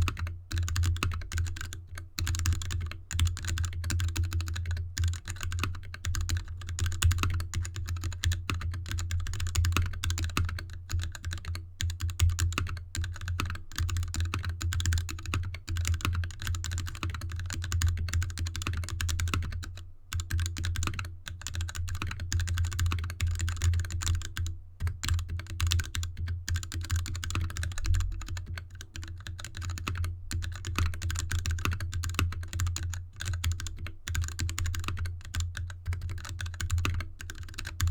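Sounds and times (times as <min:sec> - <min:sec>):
typing on mechanical keyboard: 0:00.0 - 0:37.9.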